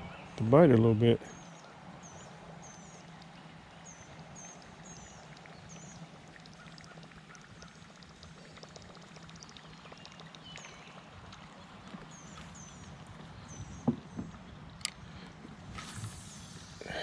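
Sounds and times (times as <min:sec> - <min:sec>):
steady low hum: 0:00.0 - 0:17.0
bird chirping: 0:01.2 - 0:14.7
light ticks and drips: 0:01.5 - 0:15.3.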